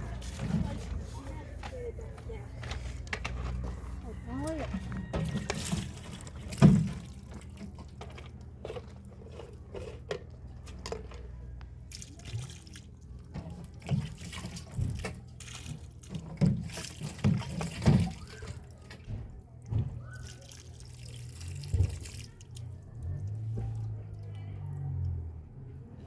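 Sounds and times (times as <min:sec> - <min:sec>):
water dripping and splashing: 0:04.7 - 0:08.5, 0:11.6 - 0:25.2.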